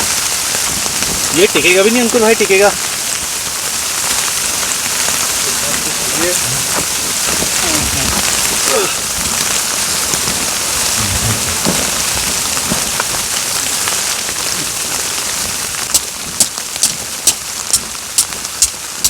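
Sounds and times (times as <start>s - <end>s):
rain and wet snow falling: 0.0s - 19.0s
sharp evenly spaced clicks: 15.9s - 18.8s.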